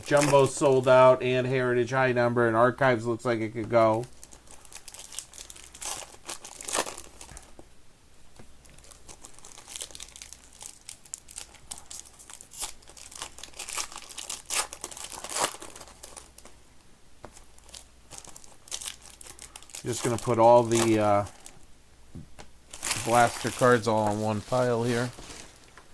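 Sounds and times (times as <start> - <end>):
card wrappers tearing and crinkling: 0.0 - 1.1, 3.7 - 7.5, 8.6 - 16.5, 17.3 - 21.5, 22.7 - 25.8.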